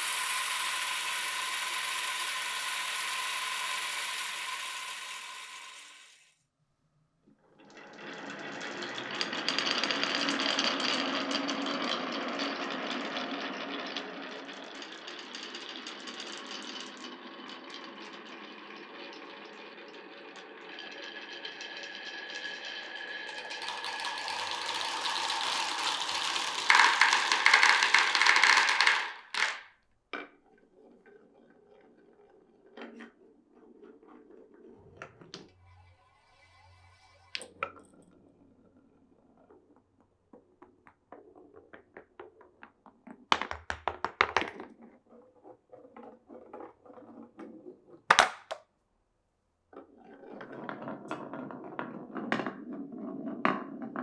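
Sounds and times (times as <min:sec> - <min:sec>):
marbles rattling down wooden run: 0:00.0 - 0:06.2, 0:22.6 - 0:29.7, 0:48.1 - 0:48.6.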